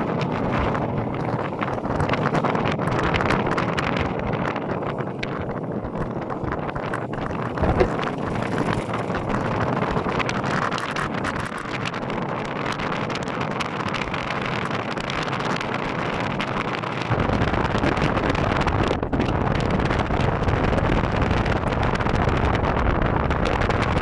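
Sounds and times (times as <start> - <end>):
deep buffeting rumble: 0.0 - 24.0
wind rushing on microphone: 0.0 - 24.0.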